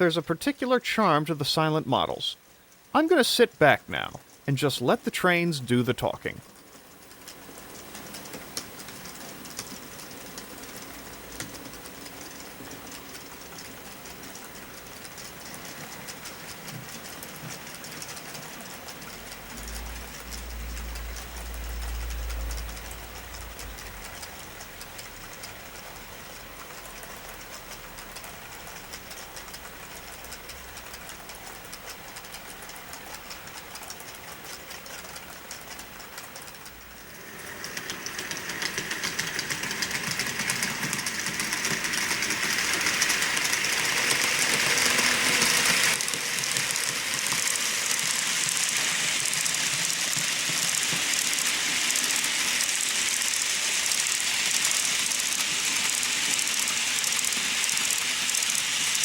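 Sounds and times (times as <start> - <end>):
wheels clicking over rail joints: 6.5 - 59.0
model train motor whirring: 6.8 - 59.0.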